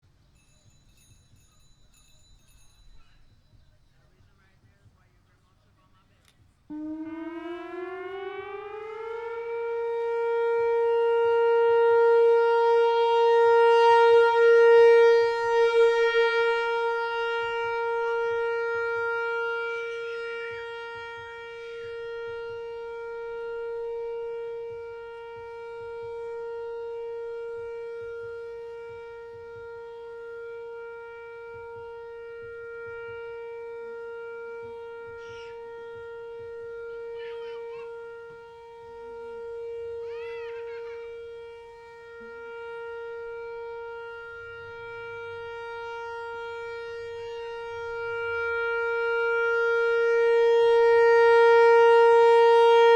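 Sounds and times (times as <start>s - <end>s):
electronic warning siren: 6.7s - 52.9s.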